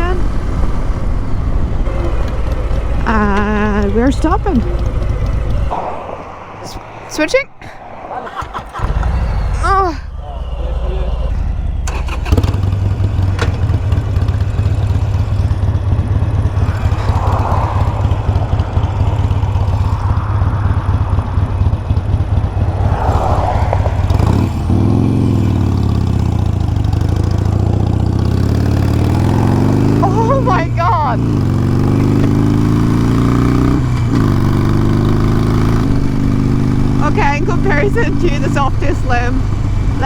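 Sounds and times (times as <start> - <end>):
motorcycle engine running: 0.0 - 5.8, 10.2 - 23.0, 23.6 - 40.0.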